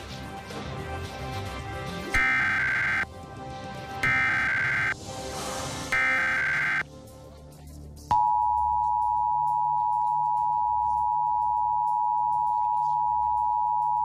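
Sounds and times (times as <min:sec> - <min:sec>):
two-tone alert signal: 0:02.2 - 0:03.0, 0:04.0 - 0:05.0, 0:05.9 - 0:06.8
warbling digital data chirp: 0:06.0 - 0:06.8.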